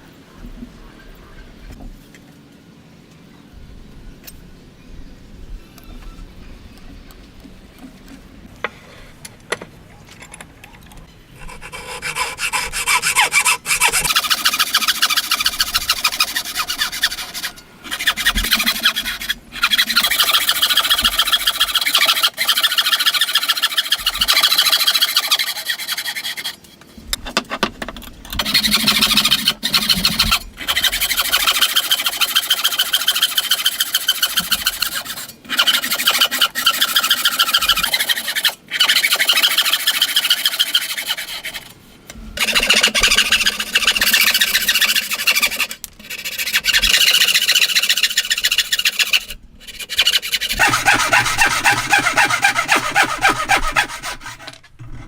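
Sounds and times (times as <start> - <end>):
tool rasping wood: 11.4 - 26.6, 28.4 - 41.7, 42.4 - 55.0.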